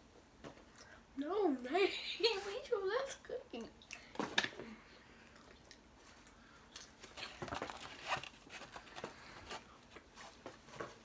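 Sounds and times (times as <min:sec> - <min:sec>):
cookies being chewed: 0:05.2 - 0:10.4.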